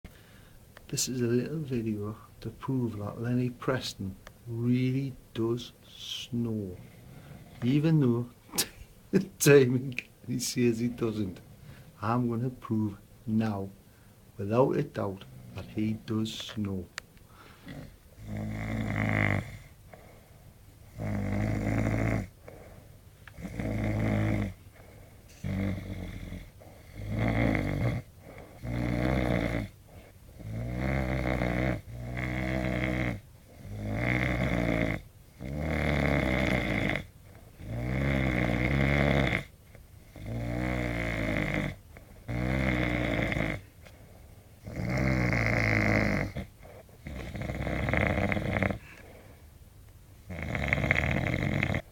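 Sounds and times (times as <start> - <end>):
man snoring: 4.7 - 8.7, 14.4 - 16.6, 17.3 - 20.3, 20.9 - 43.7, 44.6 - 49.2, 50.3 - 51.9.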